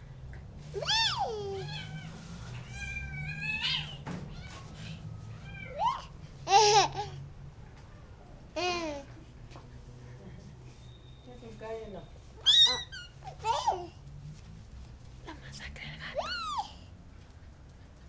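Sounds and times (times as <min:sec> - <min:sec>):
cat meowing: 0:00.8 - 0:04.8.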